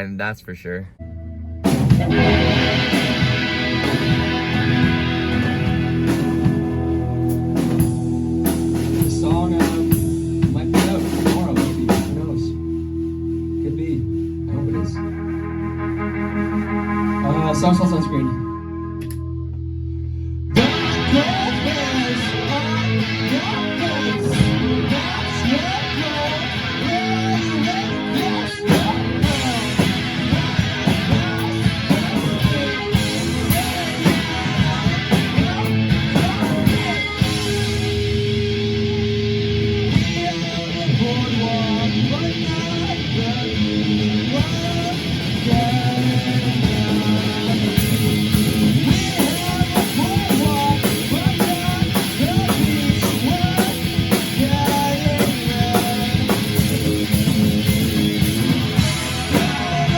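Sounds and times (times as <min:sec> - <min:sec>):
guitar rock music: 0:00.0 - 0:59.9
person singing: 0:14.5 - 0:19.2, 0:20.5 - 0:57.3, 0:58.4 - 0:59.9.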